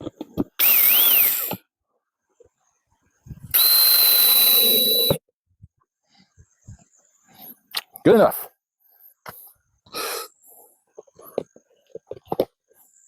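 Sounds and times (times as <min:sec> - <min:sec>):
power tool motor whining: 0:00.6 - 0:01.6, 0:03.5 - 0:05.2.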